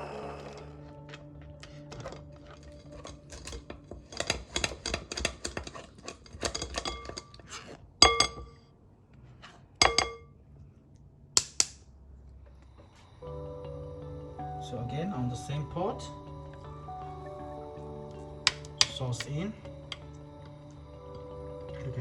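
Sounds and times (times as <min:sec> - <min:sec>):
metal utensils clinking and scraping: 0:01.7 - 0:08.5.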